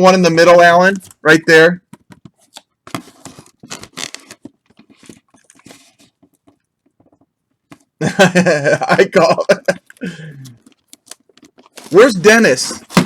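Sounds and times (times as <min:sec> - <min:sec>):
cardboard boxes scraping: 0:11.8 - 0:13.0.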